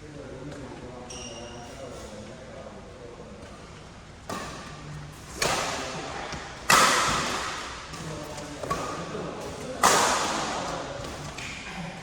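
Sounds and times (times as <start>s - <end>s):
rackets hitting shuttlecock: 4.2s - 11.6s.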